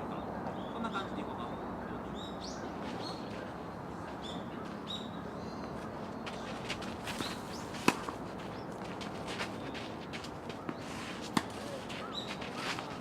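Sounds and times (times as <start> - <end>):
small birds chirping: 0.4 - 7.8, 12.0 - 12.7
tennis ball struck by racket: 6.8 - 9.2, 10.7 - 12.9.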